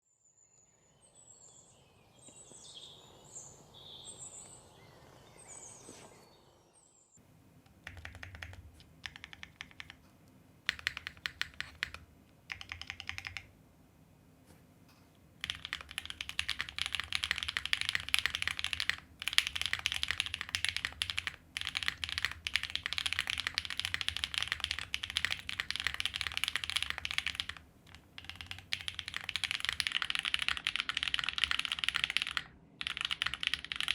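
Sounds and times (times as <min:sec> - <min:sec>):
mechanical keyboard typing: 0:07.7 - 0:10.0, 0:10.6 - 0:13.5, 0:15.4 - 0:33.9.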